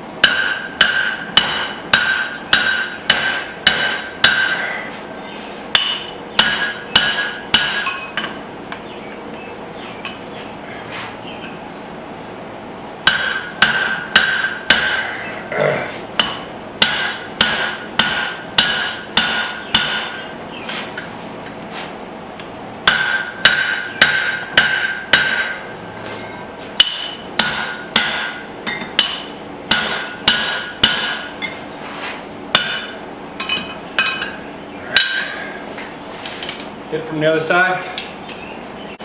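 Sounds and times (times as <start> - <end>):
hammer ringing on steel punch: 0.2 - 4.7, 5.7 - 8.4, 13.0 - 15.1, 16.2 - 20.2, 22.8 - 25.7, 26.8 - 31.4, 32.5 - 34.4, 35.0 - 35.3.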